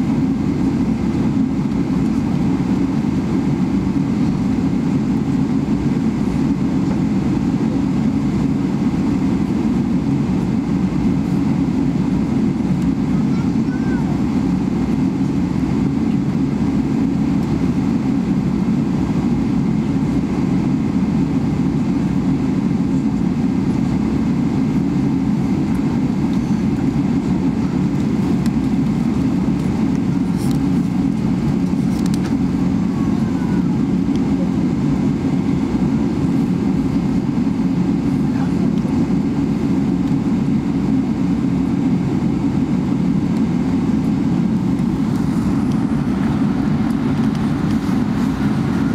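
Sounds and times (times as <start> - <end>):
aircraft low rumble: 0.0 - 48.9.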